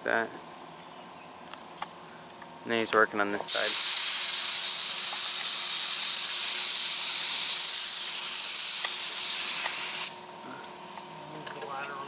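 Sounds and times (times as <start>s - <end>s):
paint spray gun hissing: 3.5s - 10.3s.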